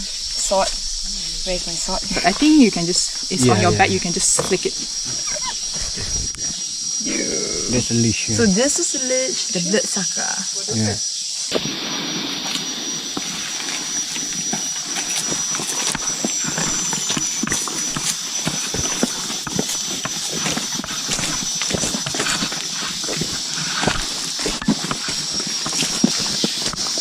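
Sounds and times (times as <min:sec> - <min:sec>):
high-pitched insect drone: 0:00.0 - 0:27.0
footsteps on a trail: 0:03.2 - 0:07.0, 0:12.3 - 0:27.0.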